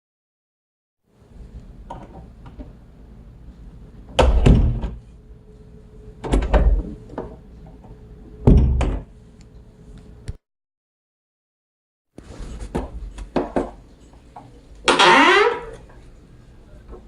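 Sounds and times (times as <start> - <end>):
door thuds: 4.2 - 5.0, 8.5 - 9.1.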